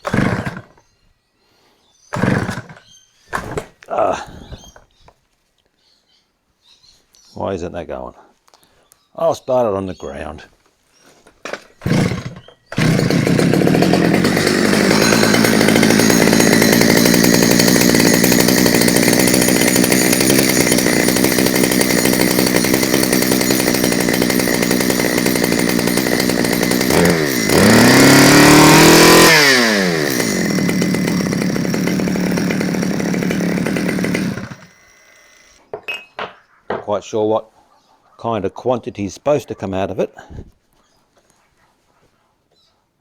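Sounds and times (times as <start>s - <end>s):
chainsaw engine running and revving: 0.0s - 0.7s, 2.2s - 2.8s, 11.8s - 35.6s.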